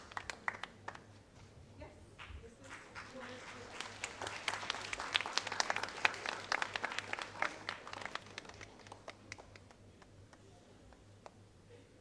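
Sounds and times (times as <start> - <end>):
audience applauding: 0.0 - 1.0, 2.2 - 9.8.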